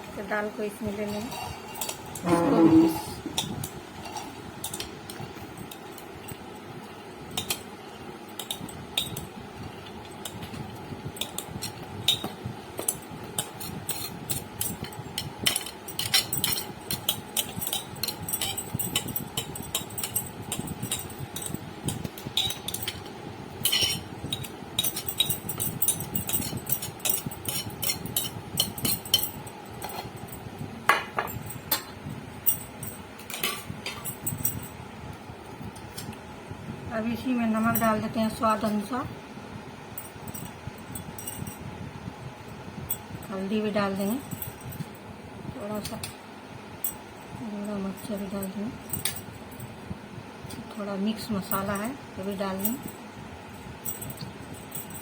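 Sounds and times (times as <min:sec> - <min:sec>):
utensils clinking against a vessel: 0:01.0 - 0:06.4, 0:10.2 - 0:34.7, 0:40.0 - 0:41.7.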